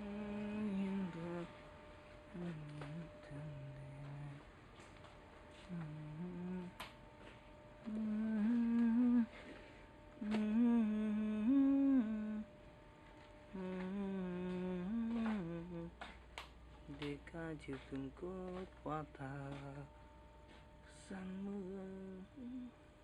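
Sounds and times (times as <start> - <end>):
man humming: 0.0 - 1.5, 2.3 - 4.5, 5.6 - 6.8, 7.8 - 9.4, 10.2 - 12.5, 13.5 - 16.0, 21.0 - 22.8.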